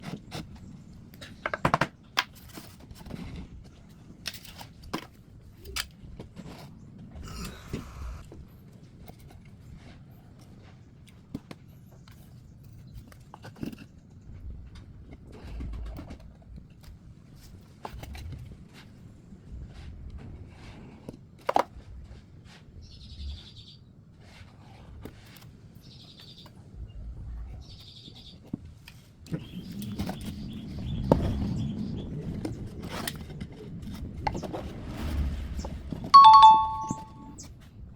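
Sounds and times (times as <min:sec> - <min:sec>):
bright two-note chime: 0:36.2 - 0:37.3
high chirps: 0:36.2 - 0:37.4.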